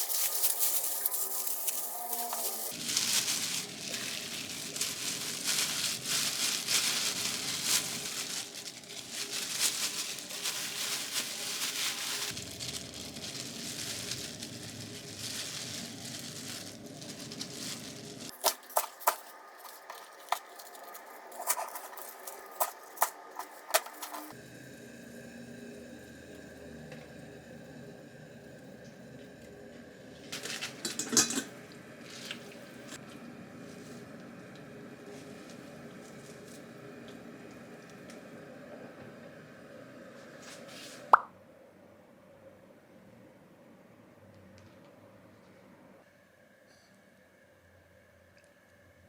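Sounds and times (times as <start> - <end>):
crinkling handling noise: 0.0 - 24.4, 30.3 - 34.2.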